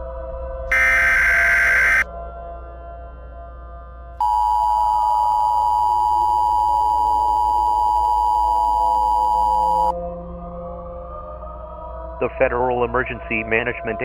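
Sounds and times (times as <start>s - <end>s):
two-tone alert beep: 0.7s - 2.0s.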